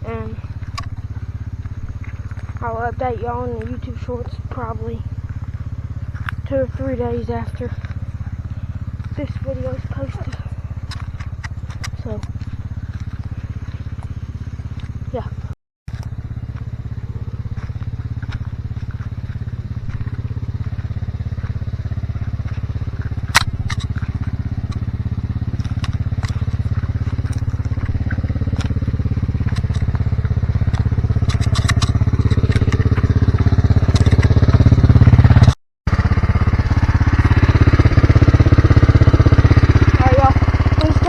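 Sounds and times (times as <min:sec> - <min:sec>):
small engine running: 0:00.0 - 0:41.0
sharp clicks and snaps: 0:00.6 - 0:01.0, 0:10.1 - 0:13.3, 0:23.0 - 0:24.9, 0:25.6 - 0:34.7.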